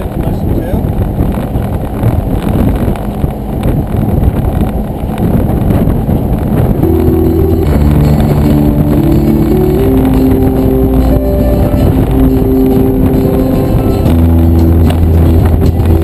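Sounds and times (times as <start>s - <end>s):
road and engine noise in car: 0.0s - 16.0s
music over car stereo: 6.5s - 16.0s.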